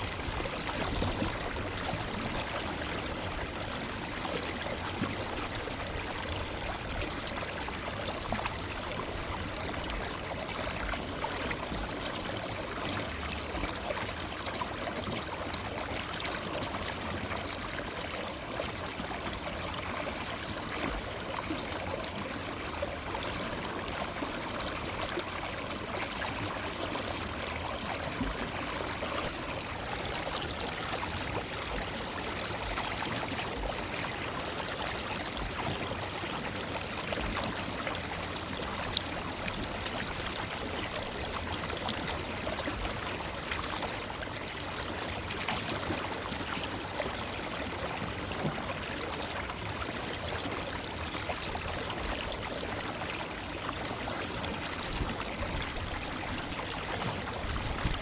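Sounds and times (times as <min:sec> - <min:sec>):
water splashes and trickles: 0:00.0 - 0:58.0.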